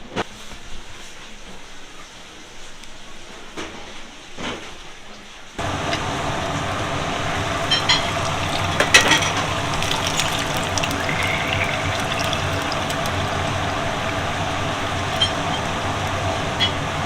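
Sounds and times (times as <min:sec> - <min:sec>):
low hum: 0:05.6 - 0:17.0.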